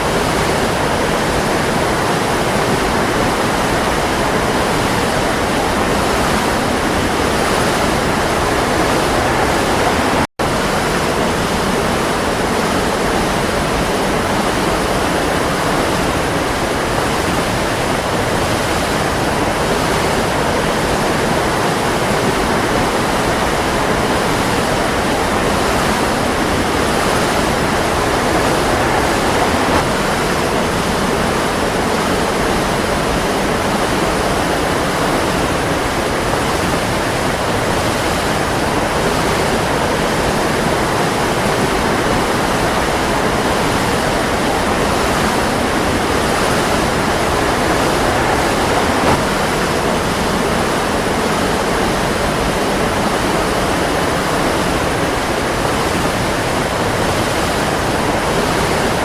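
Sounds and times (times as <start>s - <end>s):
waterfall rushing: 0.0s - 59.0s.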